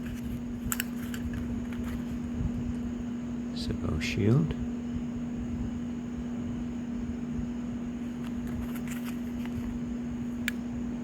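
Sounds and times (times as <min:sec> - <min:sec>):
low room hum with tone: 0:00.0 - 0:11.0.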